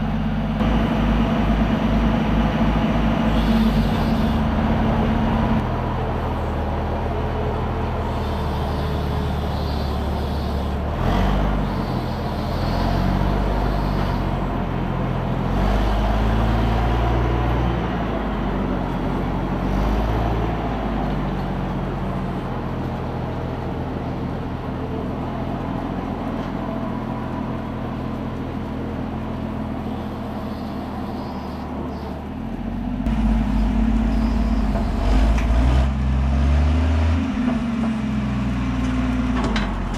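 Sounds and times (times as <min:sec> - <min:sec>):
engine revving: 0:00.6 - 0:05.8, 0:07.2 - 0:22.5, 0:29.4 - 0:39.9.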